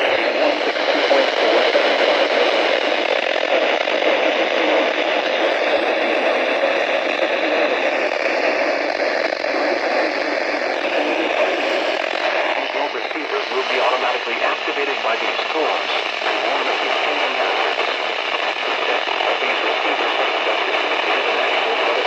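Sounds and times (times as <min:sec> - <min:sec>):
radio static hiss: 0:00.0 - 0:22.0.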